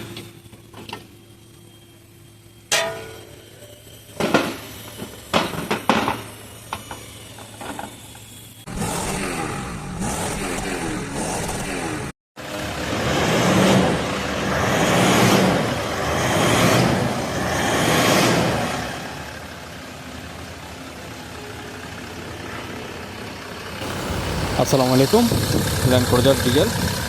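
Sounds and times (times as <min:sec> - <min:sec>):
engine running: 0:00.0 - 0:27.0
hand tools clanking on metal: 0:02.7 - 0:03.2.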